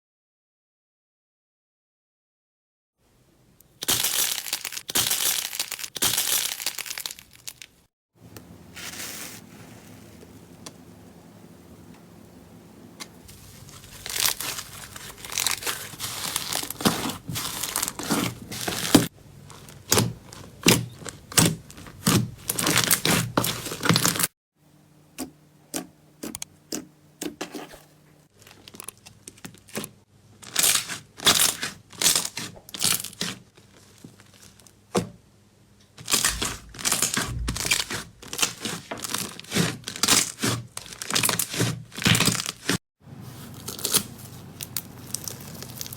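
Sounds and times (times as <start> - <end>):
slime crunchy squishes: 3.7 - 7.8, 13.2 - 24.3, 28.4 - 34.6, 36.0 - 45.9.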